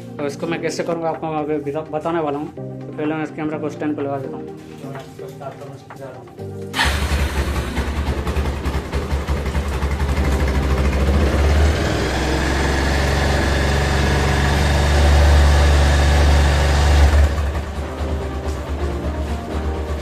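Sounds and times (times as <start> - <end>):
motorcycle engine running: 6.8 - 20.0.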